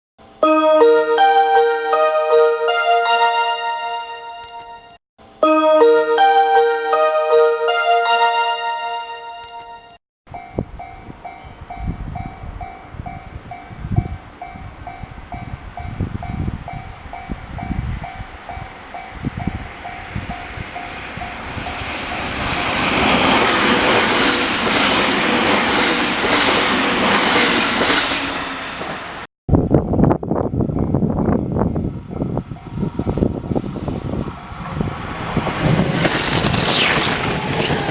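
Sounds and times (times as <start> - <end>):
level crossing warning bell ringing: 0.4 - 10.0.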